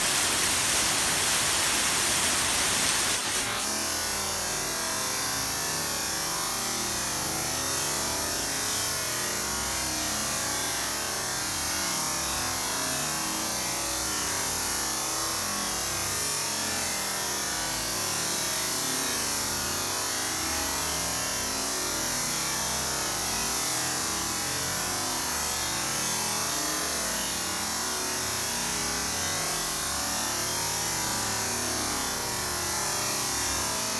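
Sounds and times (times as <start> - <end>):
steady rain falling: 0.0 - 3.6.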